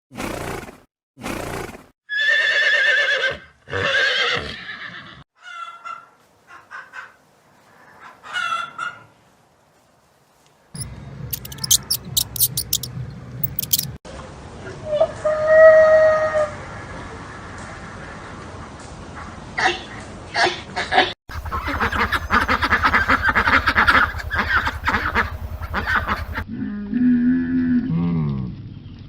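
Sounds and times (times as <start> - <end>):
horses whinnying: 2.1 - 5.2
sharp clicks: 10.8 - 14.0
steady noise: 21.3 - 26.4.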